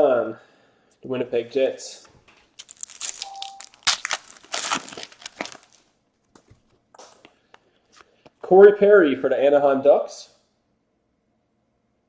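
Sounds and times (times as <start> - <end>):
foil wrappers crinkling and tearing: 2.5 - 5.9.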